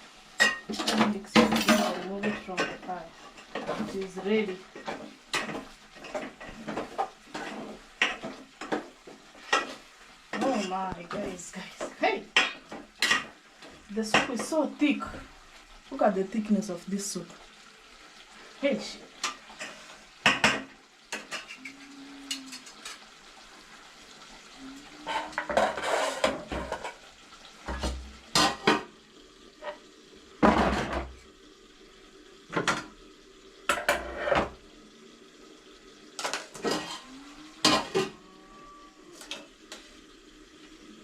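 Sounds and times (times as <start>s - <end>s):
metal spoon scraping a pot: 25.0s - 26.6s.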